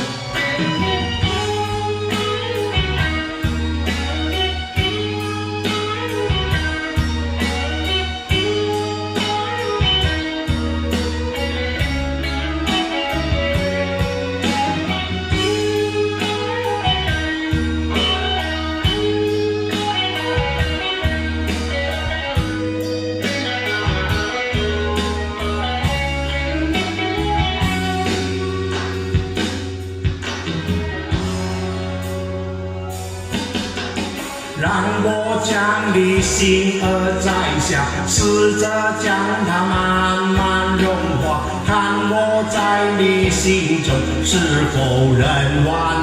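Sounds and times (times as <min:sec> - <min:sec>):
steady drum beat: 0:00.0 - 0:45.8
bass: 0:00.0 - 0:46.0
guitar solo: 0:00.0 - 0:46.0.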